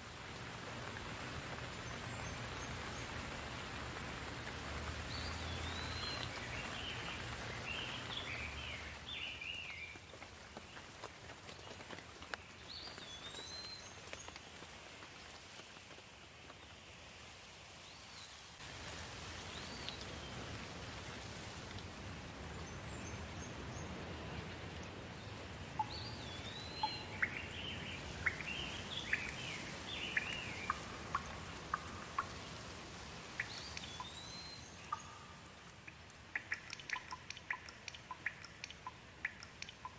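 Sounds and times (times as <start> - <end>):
sharp drip-like ticks: 0.0 - 16.6, 18.6 - 39.9
steady rain falling: 0.0 - 39.9
bird chirping: 5.1 - 10.0, 25.2 - 32.5, 33.3 - 35.7, 36.3 - 39.9.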